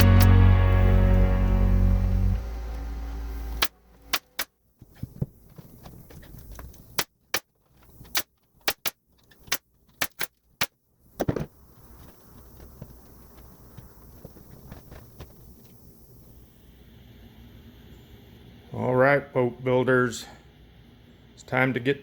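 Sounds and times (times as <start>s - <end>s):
sharp short clicks: 3.6s - 4.5s, 8.1s - 10.7s.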